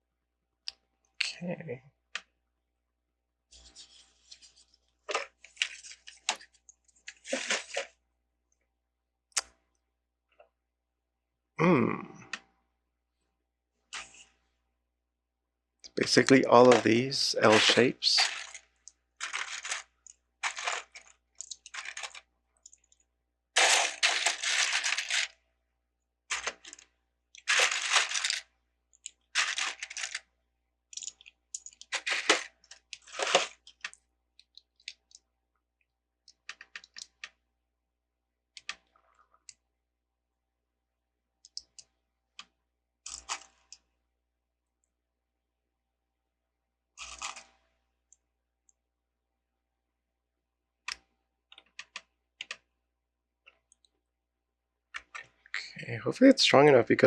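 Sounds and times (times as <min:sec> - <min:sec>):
plastic bricks clattering: 0:16.1 - 0:18.6, 0:19.2 - 0:22.8, 0:23.6 - 0:25.3, 0:26.3 - 0:28.5, 0:29.2 - 0:30.3, 0:31.0 - 0:34.0.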